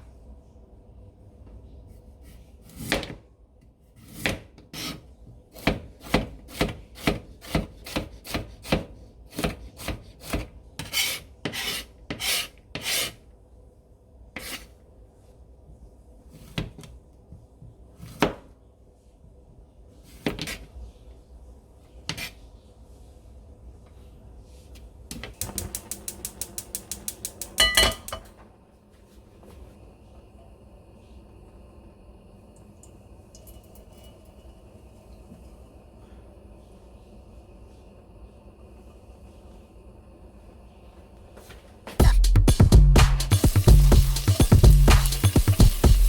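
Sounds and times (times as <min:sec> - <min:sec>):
knife chopping on cutting board: 0:05.6 - 0:13.2.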